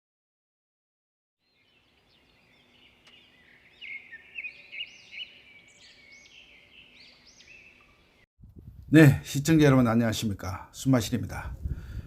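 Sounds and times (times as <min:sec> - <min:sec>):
small birds singing: 0:01.4 - 0:08.3.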